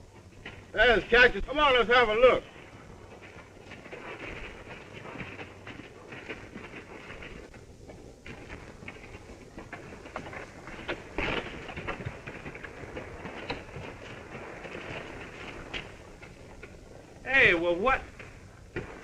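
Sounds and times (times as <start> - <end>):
film soundtrack hiss: 0.0 - 19.0.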